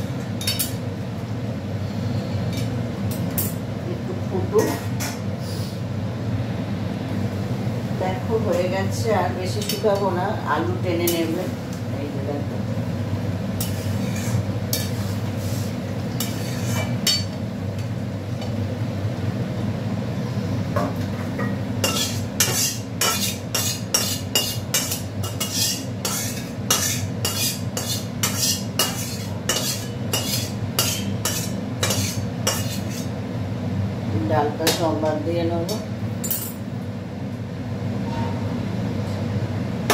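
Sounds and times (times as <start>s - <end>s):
steady low hum: 0.0s - 39.9s
metal spoon scraping a pot: 13.6s - 17.3s, 21.8s - 33.1s.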